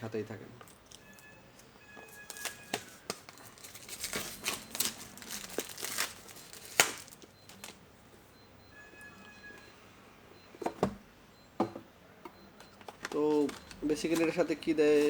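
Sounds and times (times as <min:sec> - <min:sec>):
packaging crinkling and rustling: 0:02.1 - 0:07.8, 0:12.8 - 0:15.0.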